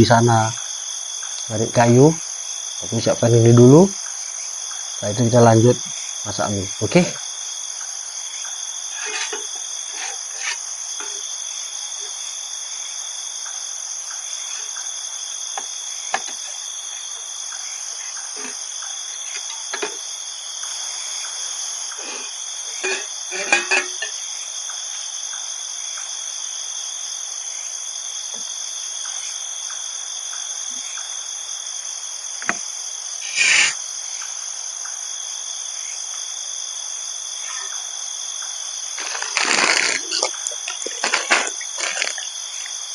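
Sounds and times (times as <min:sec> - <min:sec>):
crickets chirping: 0:00.0 - 0:42.9
camping gear knocks and rustles: 0:08.9 - 0:11.4, 0:15.6 - 0:16.7, 0:19.3 - 0:20.1, 0:22.7 - 0:24.2, 0:39.0 - 0:42.4.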